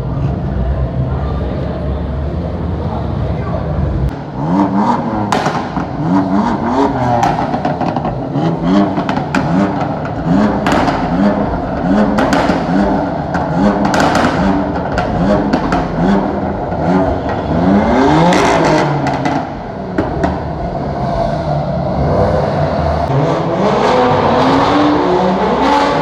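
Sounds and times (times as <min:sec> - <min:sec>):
car engine throttle blips: 0:03.8 - 0:26.0
exhaust pops and crackles: 0:05.2 - 0:20.7.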